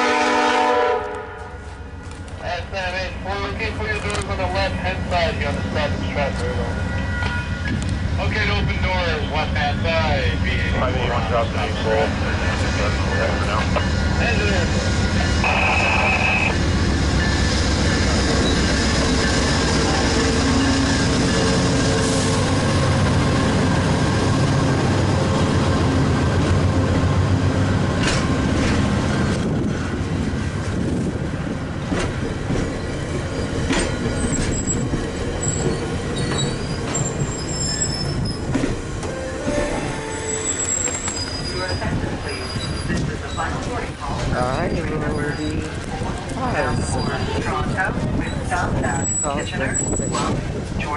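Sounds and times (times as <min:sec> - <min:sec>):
diesel locomotive rumbling: 0:00.0 - 0:50.9
scattered clicks: 0:03.9 - 0:04.3.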